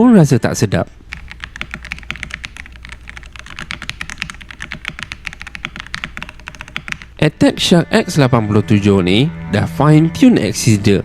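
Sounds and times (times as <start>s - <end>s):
mechanical keyboard typing: 1.1s - 7.2s.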